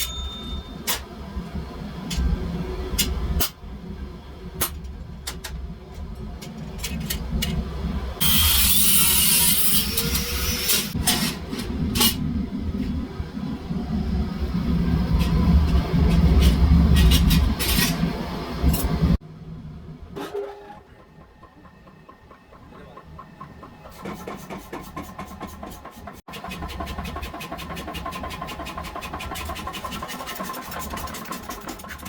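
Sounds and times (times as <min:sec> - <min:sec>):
low mechanical rumble: 0:09.7 - 0:23.9.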